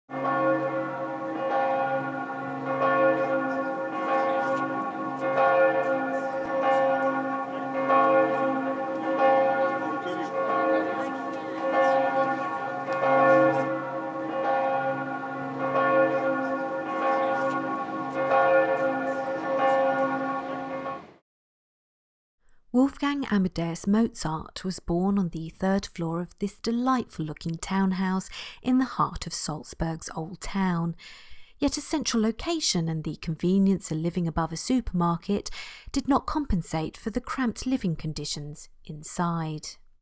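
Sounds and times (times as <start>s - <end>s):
church bells pealing: 0.1s - 21.1s.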